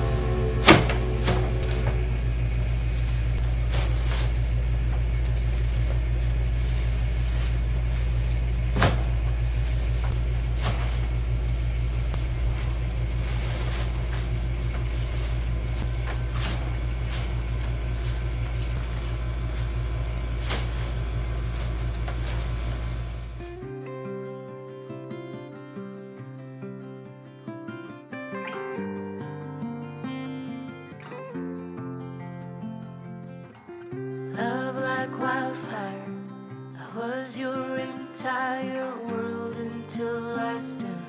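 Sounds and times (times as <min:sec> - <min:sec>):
motor vehicle rumbling: 0:00.0 - 0:23.6.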